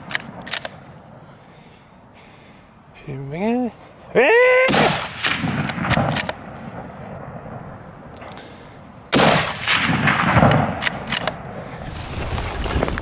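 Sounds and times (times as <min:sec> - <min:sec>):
sharp clicks: 0:00.0 - 0:00.8, 0:05.6 - 0:06.4, 0:10.4 - 0:11.5
person shouting a rising call: 0:04.1 - 0:04.9
rifle shots echoing: 0:04.6 - 0:08.2, 0:09.1 - 0:11.6.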